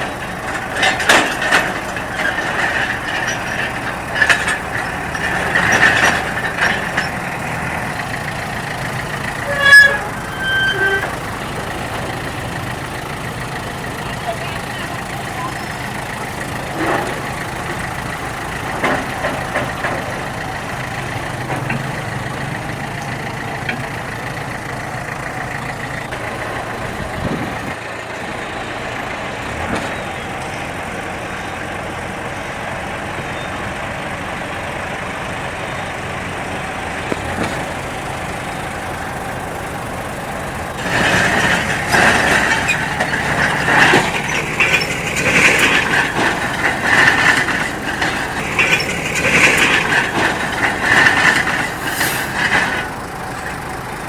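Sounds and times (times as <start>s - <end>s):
irregular rattling: 0.0s - 27.8s, 35.7s - 54.0s
heavy machinery diesel engine: 0.0s - 54.0s.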